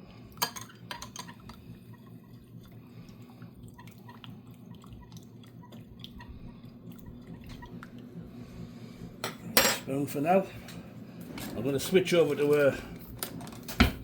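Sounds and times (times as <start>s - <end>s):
liquid swishing: 1.3s - 9.2s.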